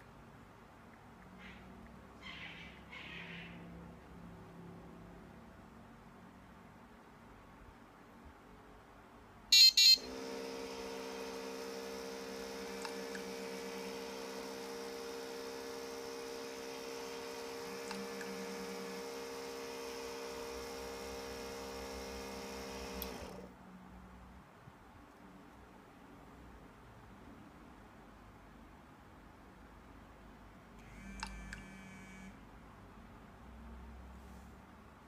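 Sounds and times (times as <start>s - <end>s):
high beeps: 9.6s - 10.0s
electric motor humming: 10.1s - 23.5s, 30.9s - 32.3s.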